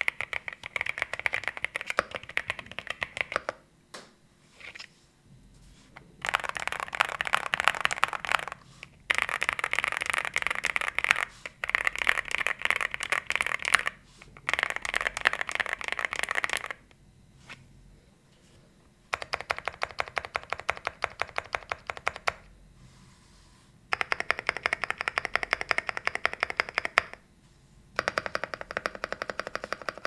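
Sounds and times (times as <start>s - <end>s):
mechanical keyboard typing: 0.0s - 3.6s, 6.2s - 16.8s, 19.1s - 22.5s, 23.9s - 27.2s, 28.0s - 30.0s.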